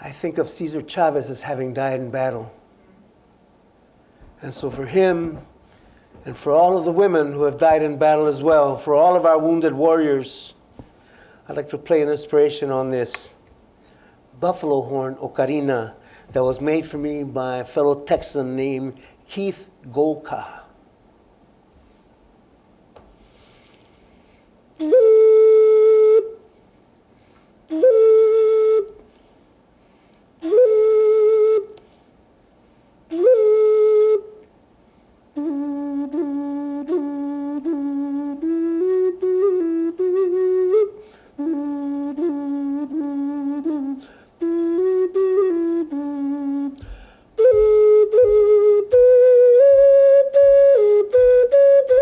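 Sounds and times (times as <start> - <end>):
ocarina melody: 24.8 - 26.5, 27.7 - 29.2, 30.4 - 31.8, 33.1 - 34.5, 35.4 - 52.0.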